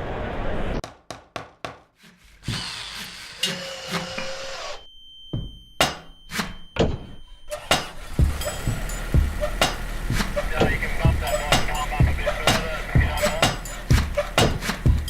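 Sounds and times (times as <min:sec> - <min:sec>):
whirring tool: 0:02.2 - 0:04.9
hand tool sharp hits: 0:05.3 - 0:10.4, 0:13.3 - 0:15.0.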